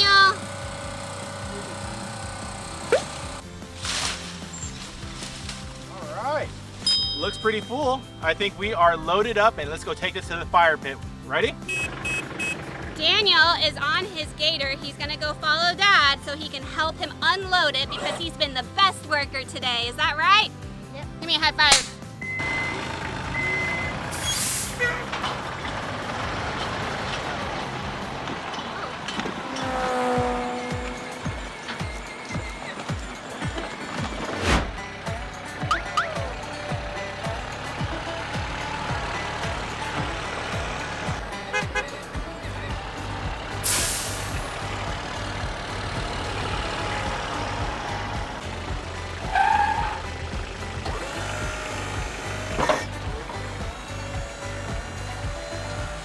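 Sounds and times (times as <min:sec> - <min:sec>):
tractor engine running: 0:00.0 - 0:18.7, 0:21.8 - 0:56.0
short hiss: 0:24.1 - 0:24.8, 0:43.6 - 0:44.6.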